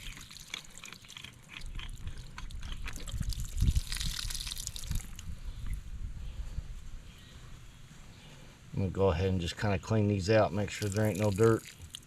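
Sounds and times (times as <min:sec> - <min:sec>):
water dripping and trickling: 0:02.9 - 0:05.3, 0:10.7 - 0:12.0.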